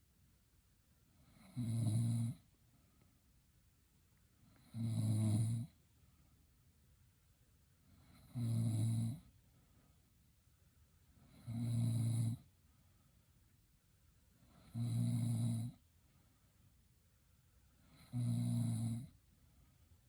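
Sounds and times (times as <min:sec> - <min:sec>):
woman snoring: 0:01.2 - 0:02.4, 0:04.5 - 0:05.8, 0:08.0 - 0:09.3, 0:11.2 - 0:12.5, 0:14.4 - 0:15.8, 0:17.8 - 0:19.2.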